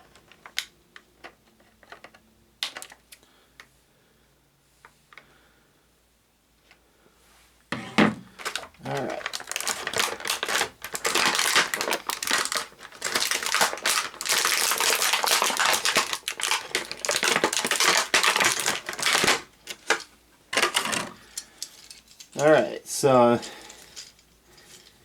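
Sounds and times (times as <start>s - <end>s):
plastic packaging crinkling: 8.3s - 22.6s.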